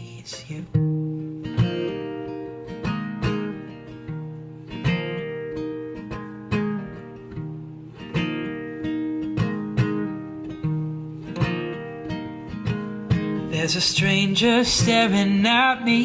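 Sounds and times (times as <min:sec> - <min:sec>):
acoustic guitar strumming: 0:00.0 - 0:16.0.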